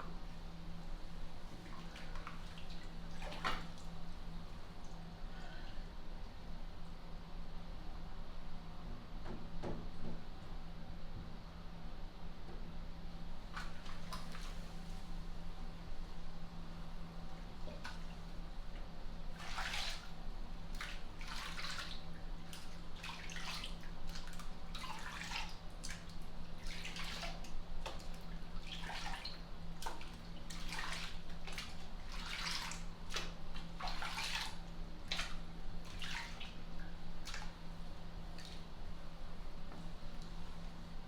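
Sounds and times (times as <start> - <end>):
steady low hum: 0.0 - 41.0
bathwater splashing: 1.5 - 4.0, 19.3 - 38.8.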